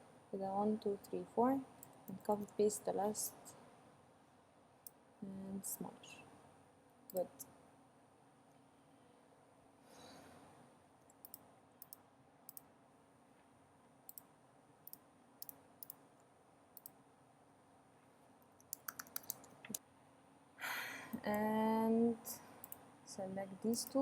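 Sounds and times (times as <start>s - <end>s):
computer mouse clicking: 11.0s - 12.7s, 14.1s - 16.0s, 16.8s - 17.0s, 18.6s - 19.8s, 22.6s - 22.8s.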